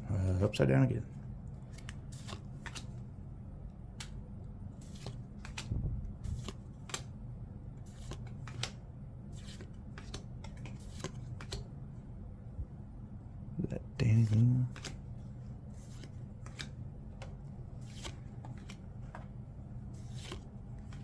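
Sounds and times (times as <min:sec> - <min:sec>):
trading cards flicking: 0:01.7 - 0:03.0, 0:04.9 - 0:05.7, 0:07.9 - 0:08.8, 0:14.2 - 0:15.0.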